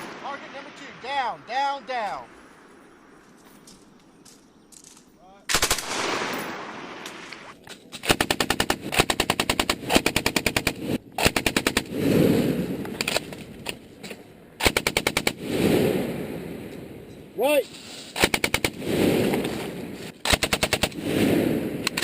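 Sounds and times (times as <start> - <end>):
machine gun automatic bursts: 8.0 - 11.9, 18.2 - 18.9, 20.2 - 21.0.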